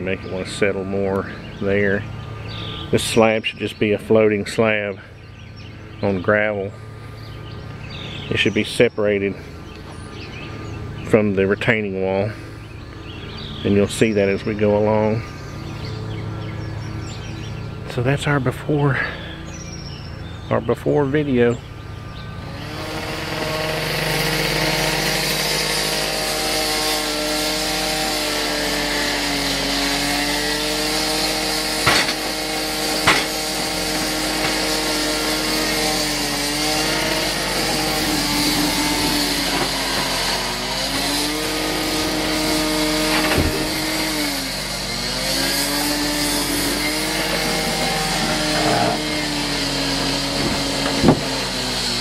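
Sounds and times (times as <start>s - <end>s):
engine running fast: 0.0s - 52.0s
sharp knocks: 31.7s - 34.8s, 43.1s - 44.0s, 50.3s - 51.4s.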